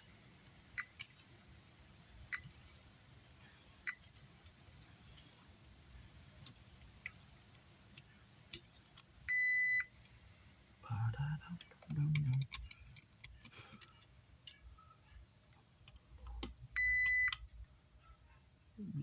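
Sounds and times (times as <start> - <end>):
multimeter beep: 9.3 - 9.9, 16.8 - 17.4.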